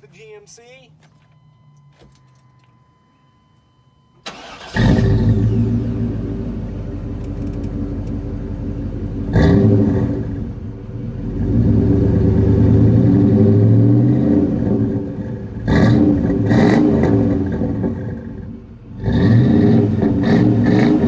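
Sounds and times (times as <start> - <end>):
car engine idling and revving: 4.2 - 21.0.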